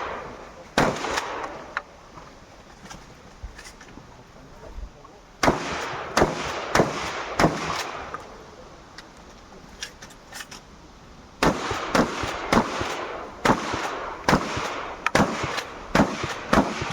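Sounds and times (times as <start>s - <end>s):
shotgun firing: 0.0s - 1.8s, 5.4s - 8.2s, 11.4s - 16.9s.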